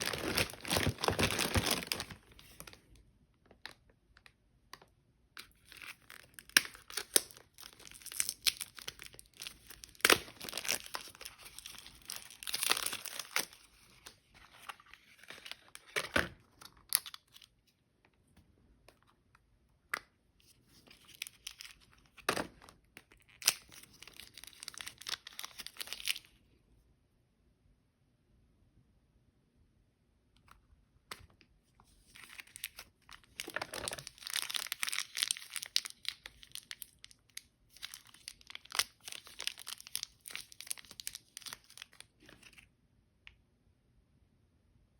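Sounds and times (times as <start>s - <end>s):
plastic packaging tearing and crinkling: 0.0s - 2.8s, 5.5s - 16.0s, 23.3s - 26.2s, 32.2s - 42.5s.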